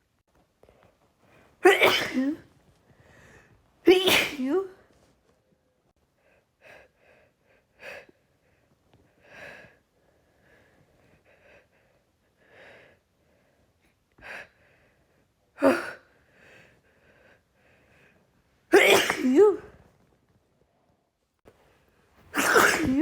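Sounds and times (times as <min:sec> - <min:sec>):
woman sneezing: 0:01.6 - 0:02.4, 0:03.9 - 0:04.8, 0:18.7 - 0:19.8, 0:22.3 - 0:23.0
woman breathing noisily: 0:02.9 - 0:03.6.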